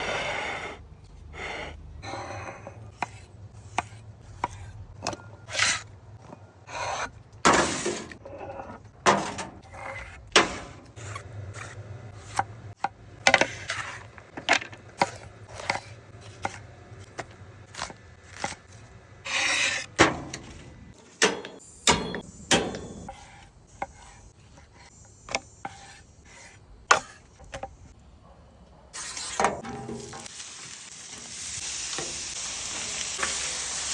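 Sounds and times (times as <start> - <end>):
knife scraping board: 5.5 - 5.8, 19.2 - 19.9, 23.0 - 24.9, 25.6 - 27.3.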